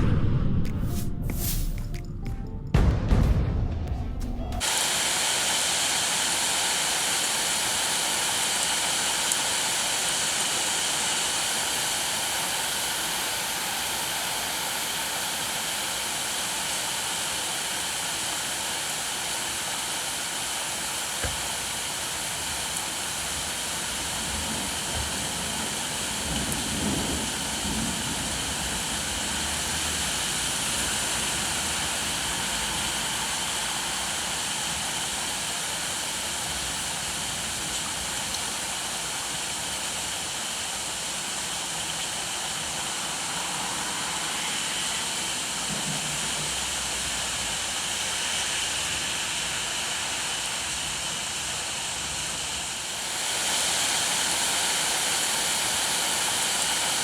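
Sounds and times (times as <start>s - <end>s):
soft low rumbles: 0.0s - 4.6s
music: 0.0s - 4.7s
steady rain: 4.6s - 57.0s.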